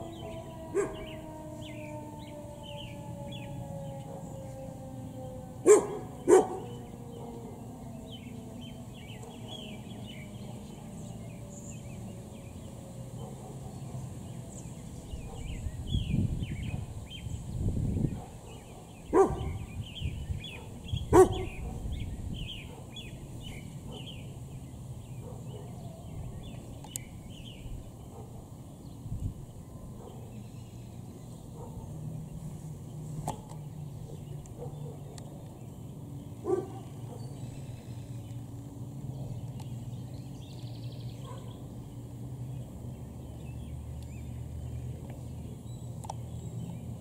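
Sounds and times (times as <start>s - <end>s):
outdoor warning siren winding down: 0.0s - 13.2s
birds chirping: 0.0s - 47.0s
dog barking: 0.7s - 1.1s, 5.6s - 7.5s, 13.2s - 13.9s, 18.2s - 19.6s, 20.5s - 21.9s, 23.9s - 24.1s, 25.2s - 25.8s, 28.1s - 28.4s, 31.6s - 31.9s, 34.1s - 35.1s, 36.4s - 37.4s, 41.2s - 41.6s.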